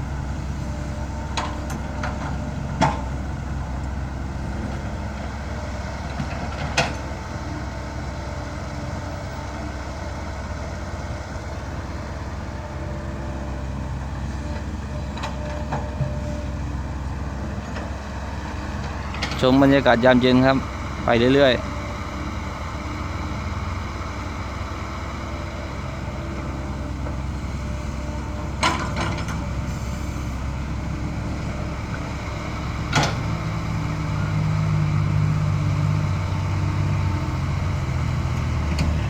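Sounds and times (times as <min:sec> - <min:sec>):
dump truck engine running: 0:00.0 - 0:39.0.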